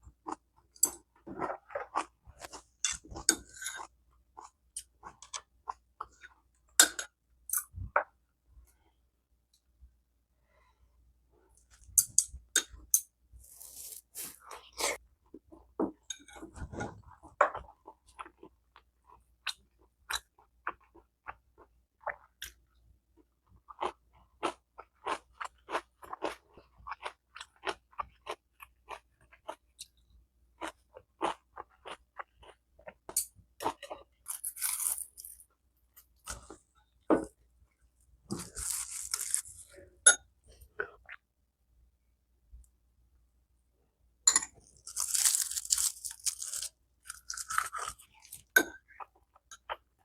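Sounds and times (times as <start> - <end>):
person chewing crunchy food: 0.0 - 6.3, 13.4 - 22.4, 23.2 - 36.7, 38.2 - 40.0, 44.6 - 50.0.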